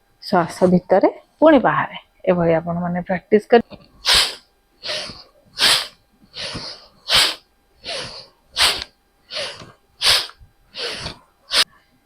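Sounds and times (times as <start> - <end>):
forceful rapid breathing: 4.0 - 11.8.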